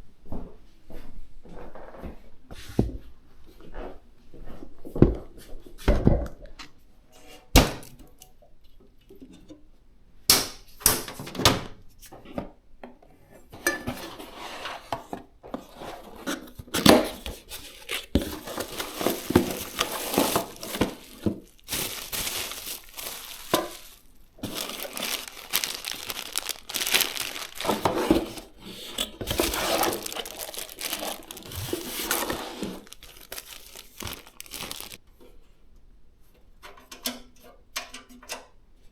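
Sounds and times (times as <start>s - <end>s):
packaging clicks and knocks: 16.7s - 35.0s
plastic wrapping crinkling: 16.8s - 35.0s.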